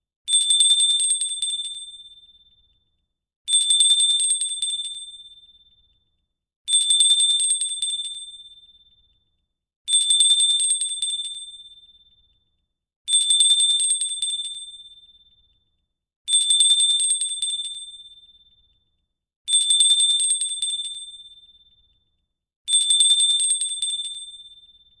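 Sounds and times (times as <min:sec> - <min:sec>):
small hand bell ringing: 0:00.3 - 0:02.6, 0:03.5 - 0:05.6, 0:06.7 - 0:08.8, 0:09.9 - 0:12.0, 0:13.1 - 0:15.4, 0:16.3 - 0:18.4, 0:19.5 - 0:21.8, 0:22.7 - 0:25.0.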